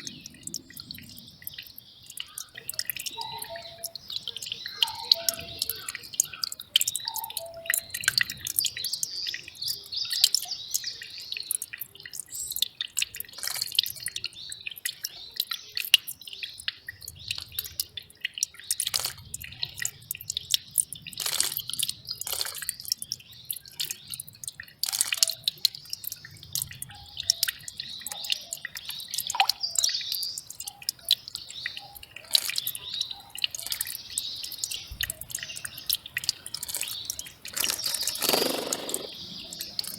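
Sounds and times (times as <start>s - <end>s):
stream trickling over rocks: 0.0s - 39.9s
short bird calls: 36.6s - 39.9s.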